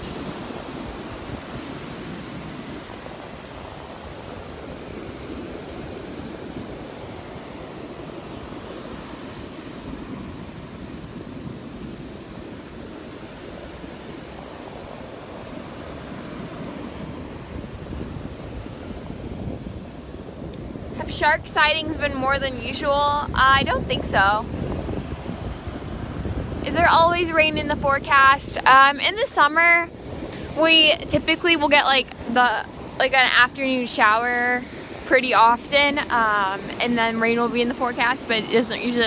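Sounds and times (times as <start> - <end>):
surf washing onto beach: 0.0 - 39.0
wind buffeting microphone: 0.0 - 39.0.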